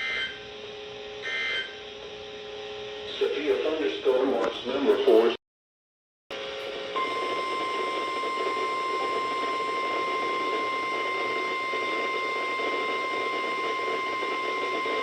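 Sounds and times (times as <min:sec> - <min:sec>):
radio static hiss: 0:03.0 - 0:05.4
high-pitched alarm tone: 0:07.0 - 0:15.0.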